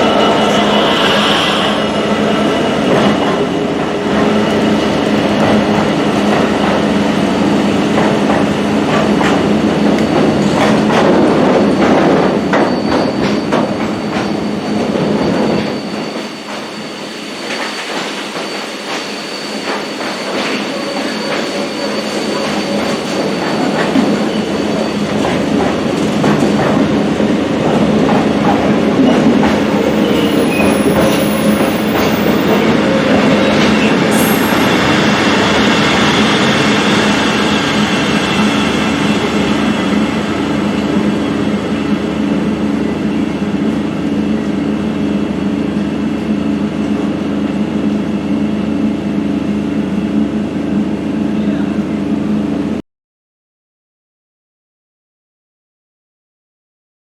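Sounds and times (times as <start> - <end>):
high wheel squeal: 0.0 - 6.9, 11.6 - 26.4, 29.0 - 43.4
train wheels clattering: 7.8 - 16.8, 17.4 - 40.0.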